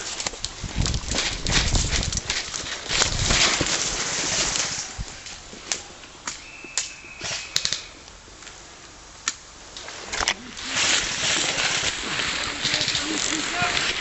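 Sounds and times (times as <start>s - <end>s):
continuous rustling: 0.0s - 14.0s
sharp clicks and snaps: 5.2s - 8.6s, 11.8s - 13.9s.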